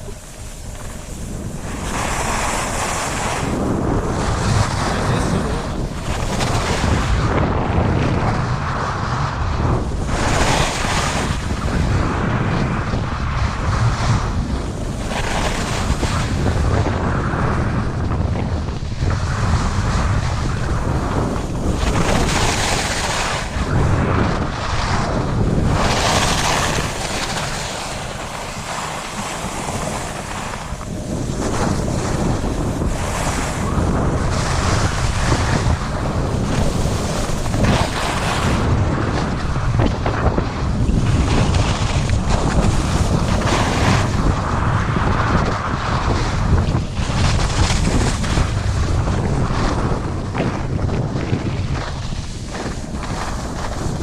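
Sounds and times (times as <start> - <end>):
ski edges scraping snow: 0.0 - 7.2, 9.6 - 12.4, 15.0 - 16.7, 19.4 - 39.5, 40.2 - 54.0
wind noise on microphone: 0.0 - 54.0.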